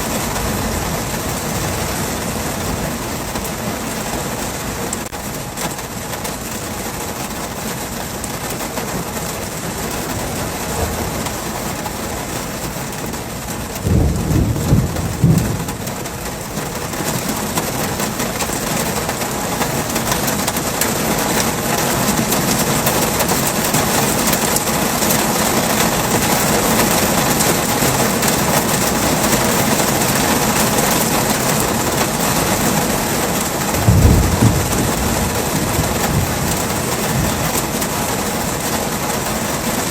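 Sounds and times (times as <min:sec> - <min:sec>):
low thunder rumbles: 0:00.0 - 0:03.4, 0:10.1 - 0:12.3, 0:13.7 - 0:19.4, 0:32.9 - 0:39.0
heavy rain pouring: 0:00.0 - 0:39.9.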